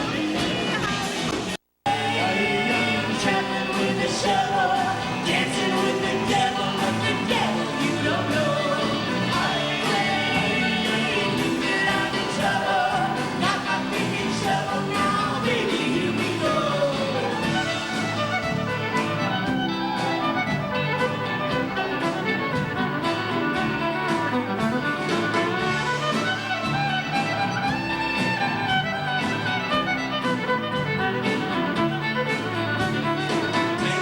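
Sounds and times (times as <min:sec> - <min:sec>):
guitar: 0:00.0 - 0:34.0
steady drum beat: 0:00.0 - 0:34.0
fiddle with sliding notes: 0:17.0 - 0:34.0.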